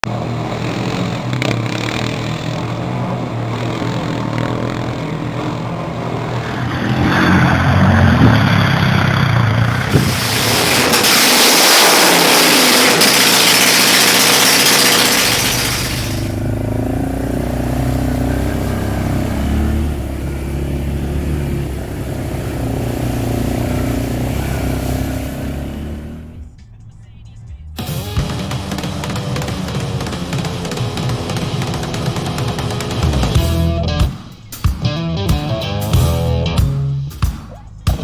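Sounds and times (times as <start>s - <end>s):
vehicle engine running: 0.0s - 34.2s
loud rushing noise: 5.8s - 26.2s.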